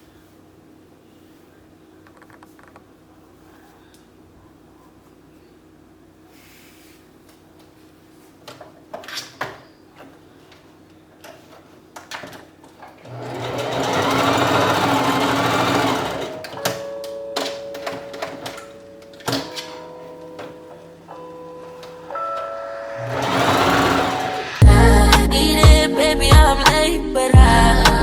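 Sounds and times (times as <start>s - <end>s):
sewing machine stitching: 13.0s - 16.8s, 23.0s - 24.6s
musical notes: 15.3s - 28.0s.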